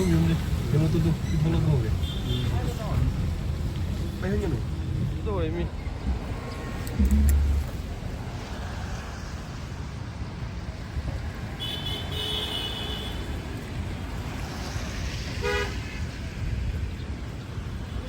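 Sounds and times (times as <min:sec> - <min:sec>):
steady low rumble: 0:04.8 - 0:08.6
horn tooting: 0:15.4 - 0:15.8.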